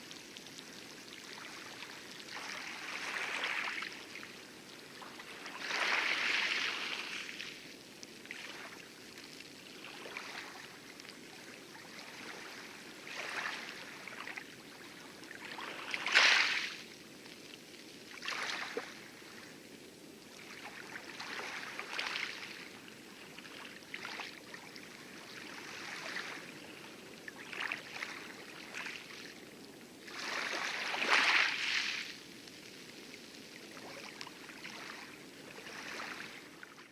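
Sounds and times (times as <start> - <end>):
waves lapping and splashing: 0.0 - 36.9.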